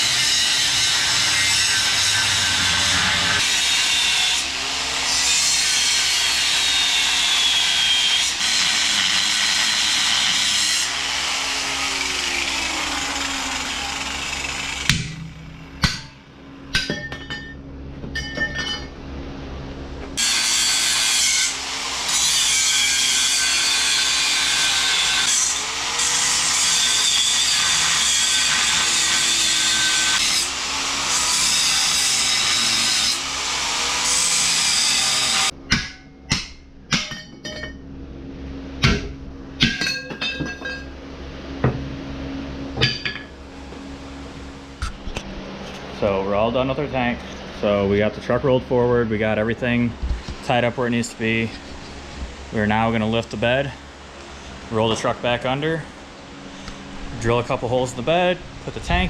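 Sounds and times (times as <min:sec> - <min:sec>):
power grinder cutting steel: 0:00.0 - 0:15.9, 0:20.2 - 0:35.5
sharp metal knocks: 0:14.8 - 0:18.9, 0:35.7 - 0:37.8, 0:38.8 - 0:40.8.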